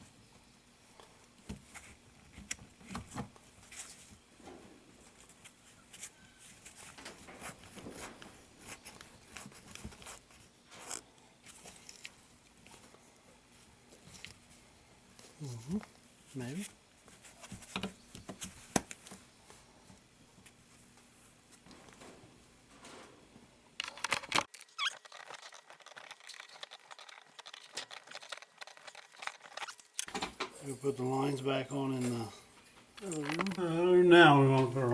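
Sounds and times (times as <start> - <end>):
hose fittings clicking and scraping: 23.8 - 30.2.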